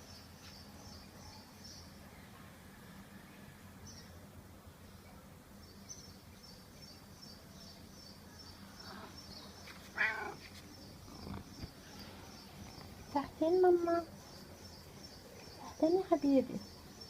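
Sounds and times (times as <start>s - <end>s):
bird chirping: 4.9s - 17.0s.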